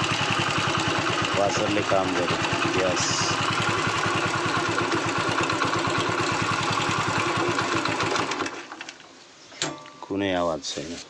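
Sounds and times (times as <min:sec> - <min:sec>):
motorcycle engine idling: 0:00.0 - 0:08.5.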